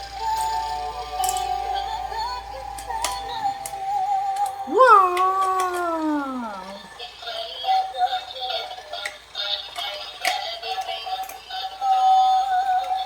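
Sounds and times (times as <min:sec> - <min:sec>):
synthetic singing voice: 0:04.7 - 0:09.1.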